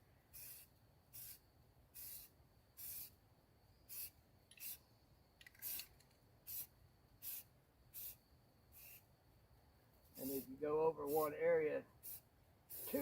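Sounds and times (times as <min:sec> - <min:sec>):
spray can hissing: 0:00.4 - 0:01.4, 0:02.0 - 0:03.1, 0:03.9 - 0:04.8, 0:05.5 - 0:05.9, 0:06.5 - 0:08.2, 0:08.8 - 0:09.0, 0:10.2 - 0:10.5, 0:12.0 - 0:13.0.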